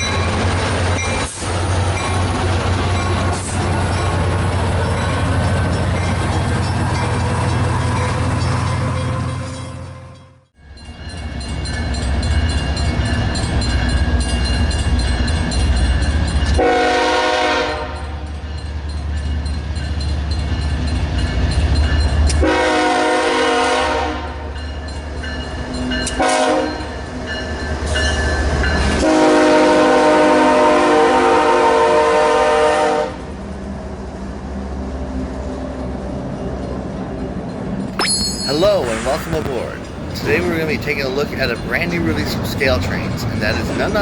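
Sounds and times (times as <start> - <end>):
diesel locomotive rumbling: 0.0 - 44.0
locomotive horn: 16.6 - 18.2, 22.4 - 24.5, 26.1 - 26.9, 29.0 - 33.3.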